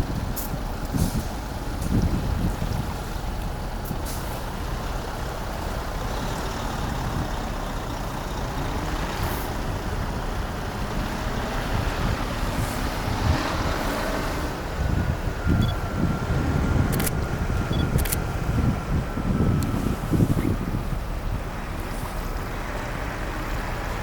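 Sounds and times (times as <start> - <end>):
wind buffeting microphone: 0.0 - 24.0
low rumble: 14.4 - 22.7.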